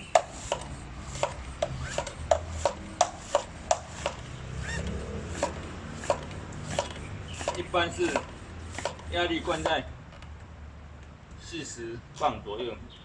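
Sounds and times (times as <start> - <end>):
bicycle pump strokes: 0.0 - 9.9
pump clicking: 0.0 - 10.4.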